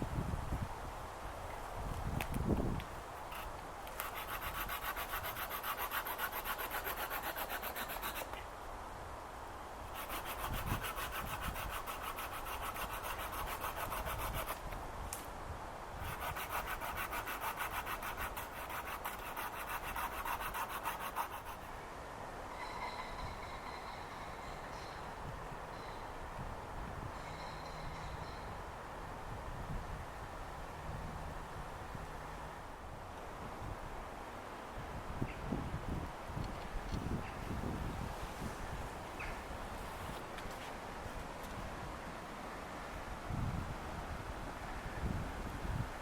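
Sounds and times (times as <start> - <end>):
hand saw cutting wood: 3.3 - 8.4, 9.9 - 14.8, 16.0 - 21.7.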